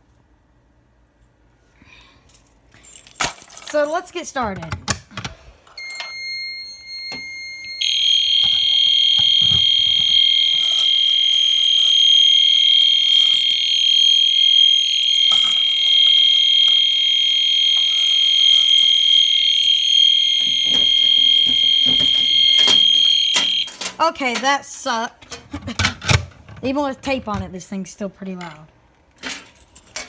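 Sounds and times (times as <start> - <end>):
fire alarm high-pitched tone: 5.7 - 23.8
faint steady tone: 5.7 - 23.9.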